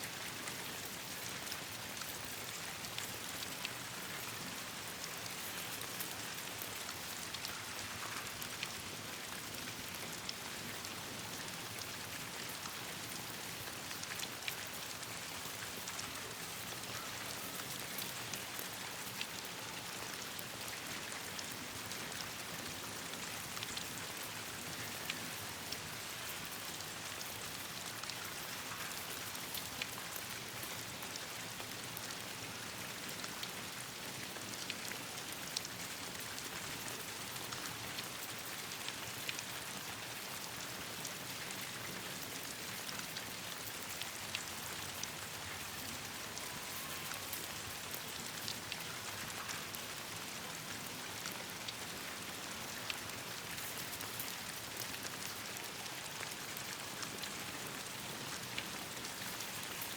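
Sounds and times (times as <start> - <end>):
rain falling on leaves: 0.0 - 59.9.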